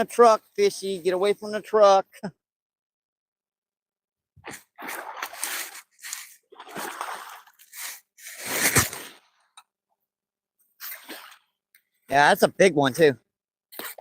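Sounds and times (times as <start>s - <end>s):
fish splashing in water: 4.5s - 9.2s.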